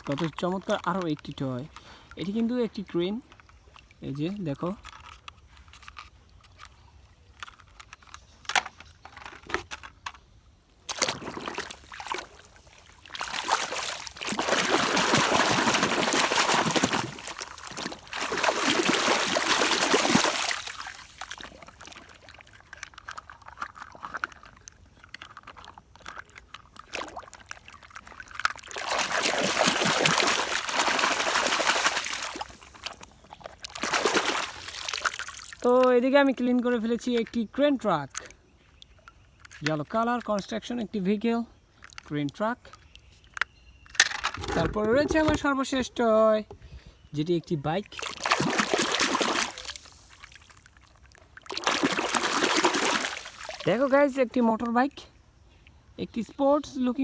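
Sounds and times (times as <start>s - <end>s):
water pouring over toy: 11.3s - 22.3s, 27.1s - 32.9s, 48.2s - 50.8s, 51.5s - 53.7s.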